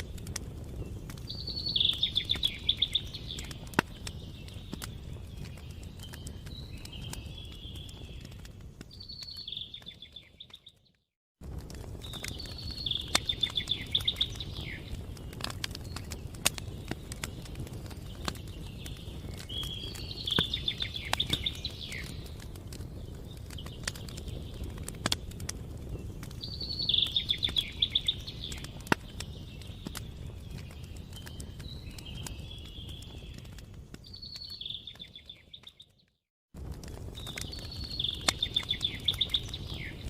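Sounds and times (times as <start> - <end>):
wood fire crackling: 0.0 - 40.0
songbird trilling: 12.6 - 14.9, 37.8 - 40.0.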